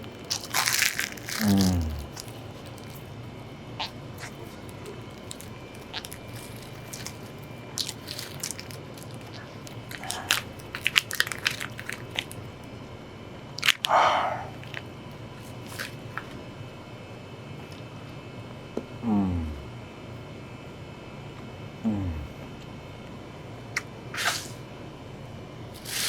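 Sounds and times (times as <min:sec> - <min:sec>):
person crunching food: 0:00.0 - 0:12.7, 0:13.6 - 0:16.2
steady low hum: 0:00.0 - 0:26.0.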